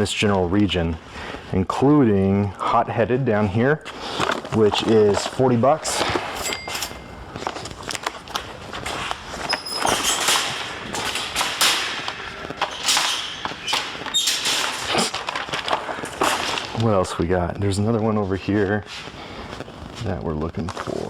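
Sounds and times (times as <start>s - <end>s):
shopping cart being handled: 4.0s - 19.0s.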